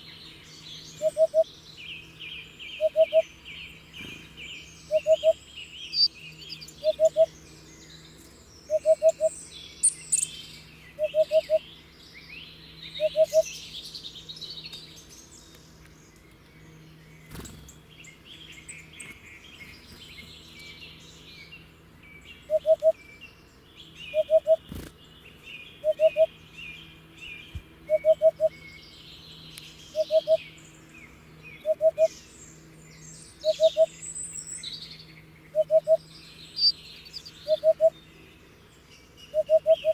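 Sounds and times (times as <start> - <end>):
small birds chirping: 0.0 - 39.9
hoopoe low oop notes: 27.9 - 28.5.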